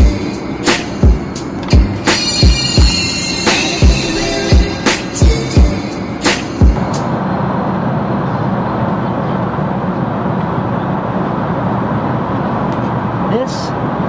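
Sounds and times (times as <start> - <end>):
music with bass-drum hits: 0.0 - 7.1
airliner cabin drone: 0.0 - 14.0.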